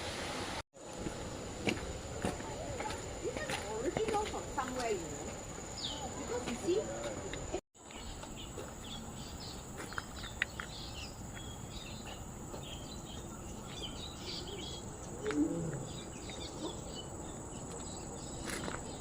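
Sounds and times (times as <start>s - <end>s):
bird chirps: 5.7s - 6.4s, 7.8s - 19.0s.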